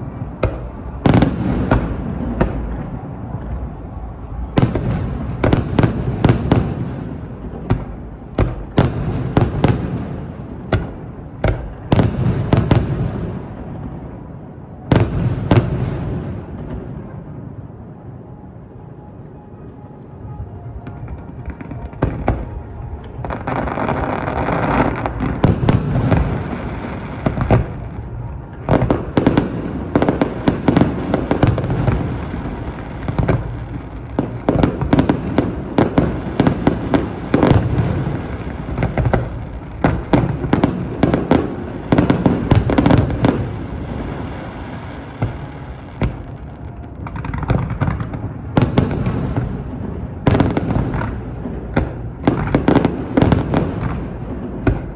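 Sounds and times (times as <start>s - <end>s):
firework crackle: 20.9s - 54.9s.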